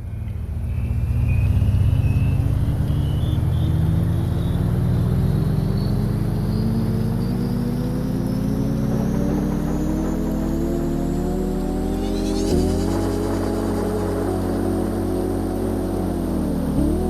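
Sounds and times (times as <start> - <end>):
high whine: 0.0 - 17.0
vehicle engine accelerating: 0.0 - 17.0.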